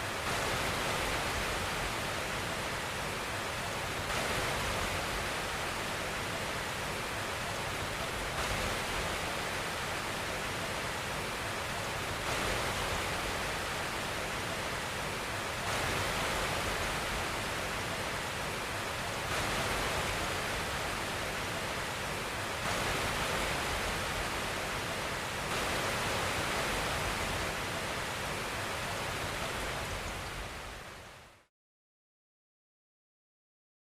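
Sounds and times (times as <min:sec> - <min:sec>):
white noise hiss: 0:00.0 - 0:31.5.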